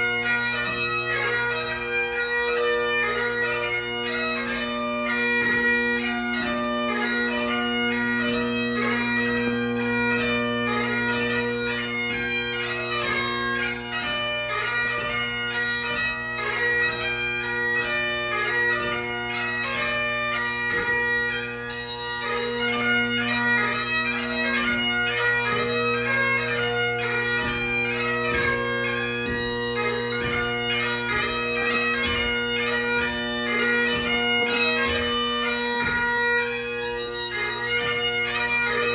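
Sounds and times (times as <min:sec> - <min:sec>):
bagpipe chanter melody: 0:00.0 - 0:38.9
bagpipe drones: 0:00.0 - 0:38.9.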